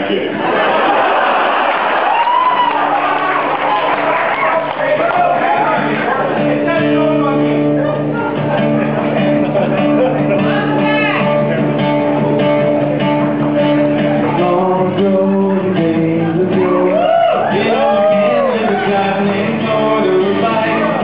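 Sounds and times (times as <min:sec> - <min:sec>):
guitar playing held chords: 0:04.7 - 0:21.0.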